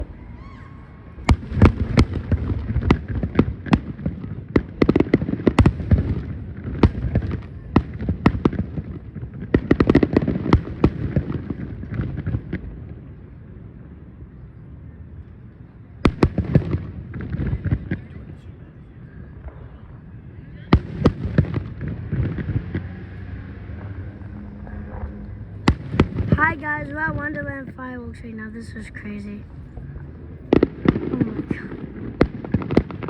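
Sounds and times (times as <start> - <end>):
fireworks cracking and popping: 1.2 - 13.0, 20.6 - 27.5, 30.4 - 33.0
low rumble: 18.9 - 33.0.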